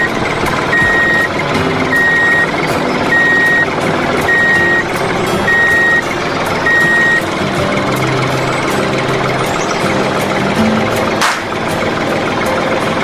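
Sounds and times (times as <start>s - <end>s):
reversing alarm beeping: 0.0s - 7.6s
mechanical running noise: 0.0s - 13.0s.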